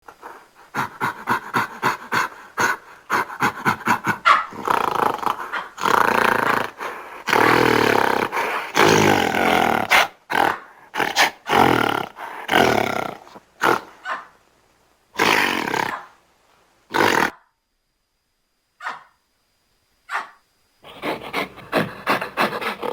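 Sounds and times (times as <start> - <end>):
primate roars: 0.7 - 14.0, 15.2 - 16.1, 16.9 - 17.4
sharp bark-like calls: 0.8 - 14.4, 15.2 - 16.2, 18.8 - 19.2, 20.1 - 22.9.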